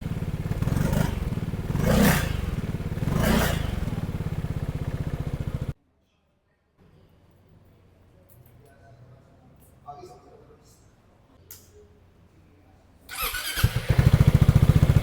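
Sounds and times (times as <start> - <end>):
motorcycle engine idling and revving: 0.0 - 5.8, 13.1 - 15.0.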